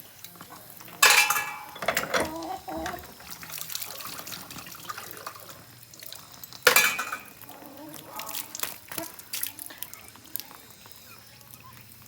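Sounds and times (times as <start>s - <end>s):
water running and splashing: 0.0s - 12.0s
dishware clinking: 0.9s - 4.7s, 6.6s - 8.3s.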